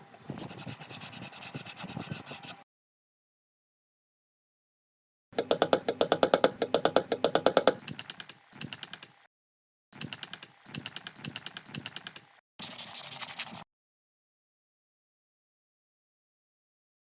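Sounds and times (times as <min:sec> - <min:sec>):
rapid mechanical tapping: 0:05.4 - 0:09.2, 0:10.0 - 0:12.4.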